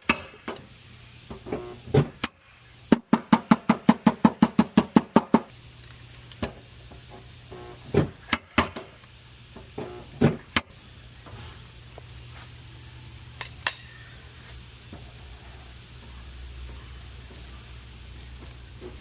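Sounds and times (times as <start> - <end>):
steady low hum: 5.5 - 19.0.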